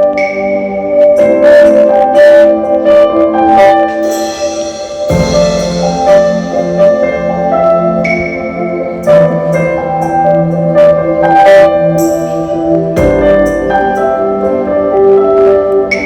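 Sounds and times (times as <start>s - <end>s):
bell-like notes: 1.1s - 11.2s
percussion hits: 3.6s - 8.4s, 12.0s - 14.2s.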